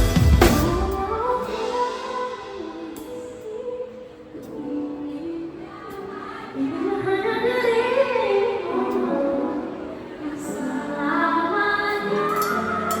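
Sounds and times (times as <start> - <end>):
band accompaniment: 0.0 - 3.6.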